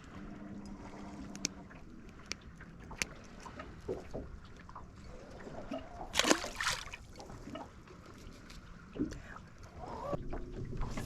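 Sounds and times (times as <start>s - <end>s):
water splashing around boat: 0.0s - 11.0s
loud splash: 6.2s - 7.0s.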